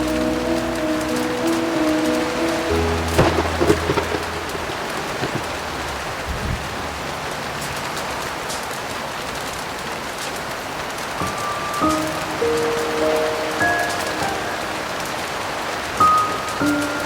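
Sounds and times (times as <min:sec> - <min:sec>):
low piano note: 0:00.0 - 0:06.9, 0:11.2 - 0:17.0
heavy rain hissing: 0:00.0 - 0:17.0
light crackling clicks: 0:07.4 - 0:17.0.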